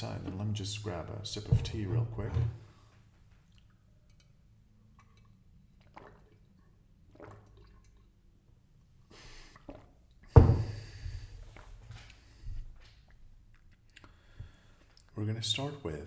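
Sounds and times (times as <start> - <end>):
person sipping tea: 9.0 - 12.6, 13.5 - 15.1.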